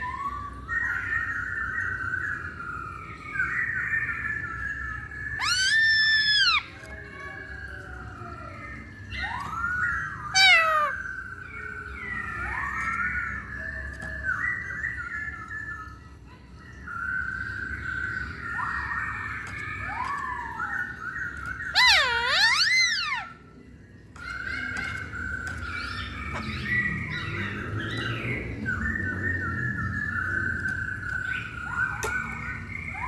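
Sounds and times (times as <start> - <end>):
bird whistling song: 0.0 - 33.0.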